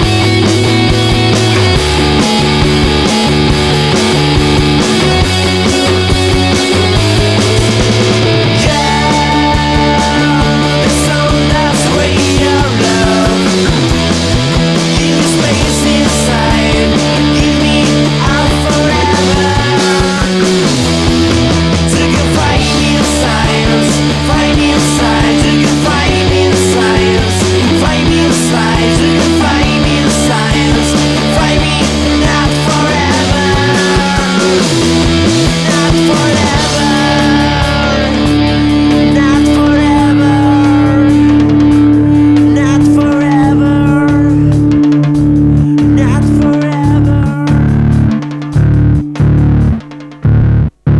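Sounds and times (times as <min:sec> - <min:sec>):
rock band playing: 0:00.0 - 0:50.9.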